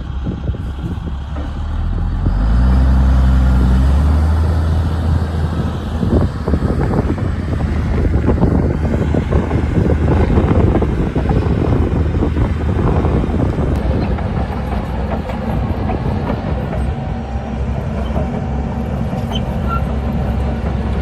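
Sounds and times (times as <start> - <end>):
diesel engine rumble: 0.0 - 21.0
machinery clatter: 6.0 - 21.0.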